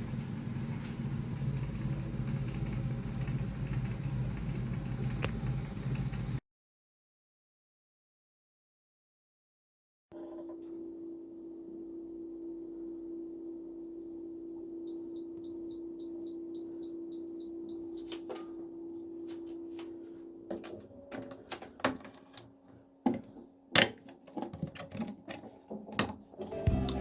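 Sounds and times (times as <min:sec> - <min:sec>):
washing machine motor hum: 0:00.0 - 0:06.4, 0:10.2 - 0:27.0
control panel beeps: 0:14.9 - 0:18.2.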